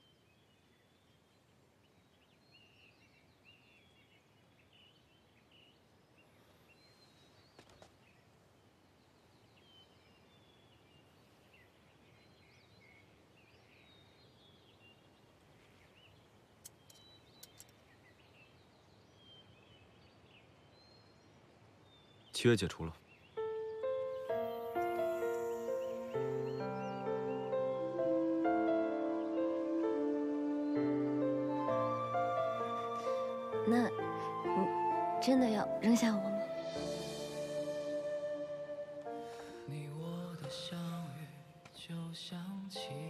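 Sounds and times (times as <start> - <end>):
faint birds chirping: 0.0 - 43.0
low background hiss: 0.0 - 43.0
soft clicks: 16.6 - 17.8.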